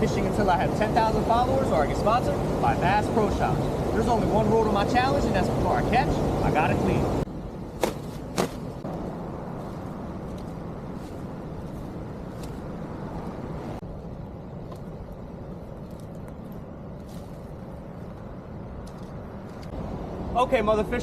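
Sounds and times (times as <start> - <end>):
outdoor background rumble: 0.0 - 21.0
faint clicks and rustles: 9.6 - 19.8.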